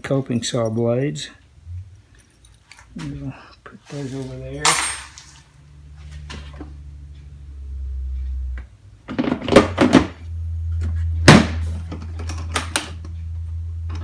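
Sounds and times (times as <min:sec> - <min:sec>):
steady low hum: 0:00.0 - 0:14.0
tools clacking in a tool box: 0:04.6 - 0:05.4.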